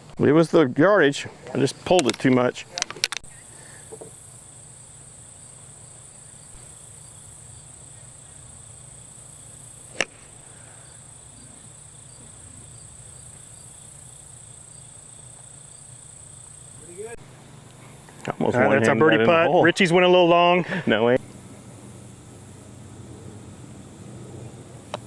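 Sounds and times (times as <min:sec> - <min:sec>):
crickets chirring: 0:00.2 - 0:25.0
putter striking golf ball: 0:09.9 - 0:10.5.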